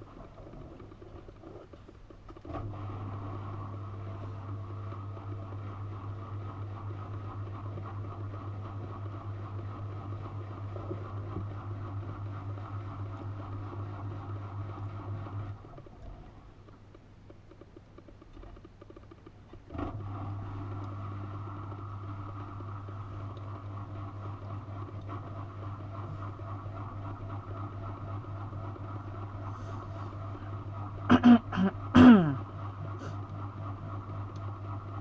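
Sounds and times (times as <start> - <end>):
washing machine pump humming: 19.7 - 35.0.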